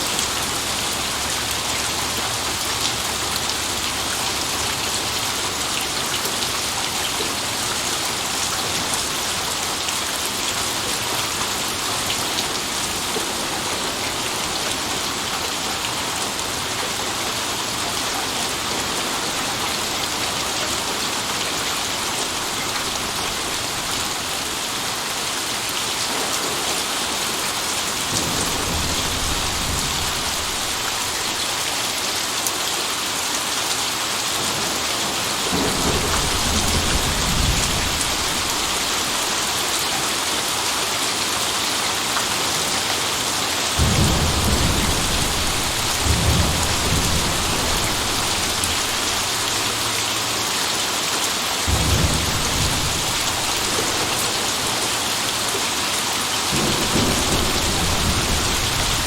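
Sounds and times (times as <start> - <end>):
rain pattering on surfaces: 0.0 - 59.0
low rumble of thunder: 27.9 - 31.4, 34.5 - 39.5, 43.8 - 49.9, 51.7 - 55.0, 56.5 - 59.0.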